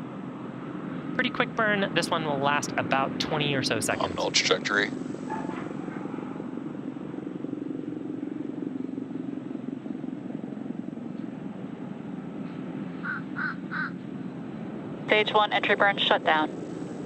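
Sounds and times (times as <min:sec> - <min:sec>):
rocket engines roaring: 0:00.0 - 0:17.0.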